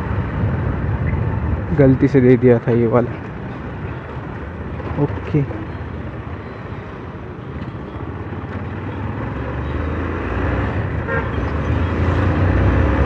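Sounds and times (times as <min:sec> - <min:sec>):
wind noise: 0:00.0 - 0:07.1.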